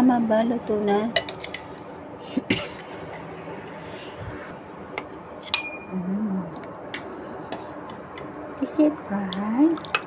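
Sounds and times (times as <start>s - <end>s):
utensils clinking on pot and bowl: 1.1s - 1.8s, 5.0s - 5.9s, 9.3s - 10.0s.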